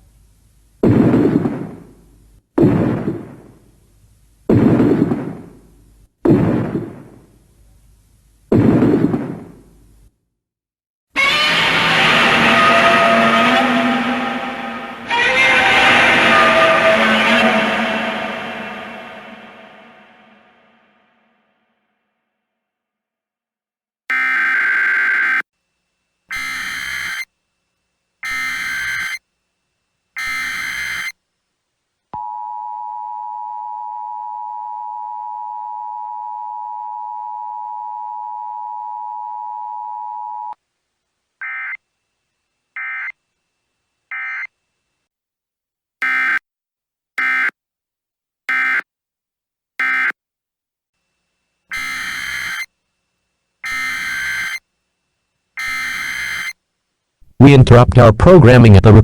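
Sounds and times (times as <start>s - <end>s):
screeching digital data bursts: 26.3s - 27.3s, 28.2s - 29.2s, 30.2s - 31.2s, 51.7s - 52.7s, 53.6s - 54.6s, 55.6s - 56.6s
two-tone attention signal: 51.7s - 52.7s, 53.7s - 54.6s, 55.6s - 56.5s.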